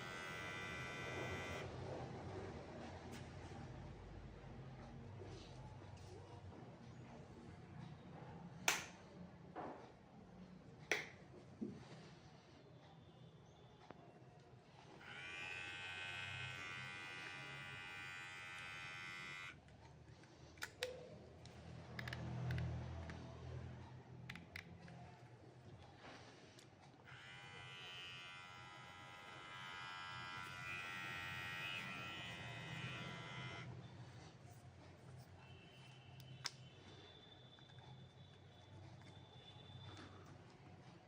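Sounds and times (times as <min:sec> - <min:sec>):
beard trimmer motor buzz: 0:00.0 - 0:01.7, 0:15.0 - 0:19.6, 0:27.1 - 0:33.7.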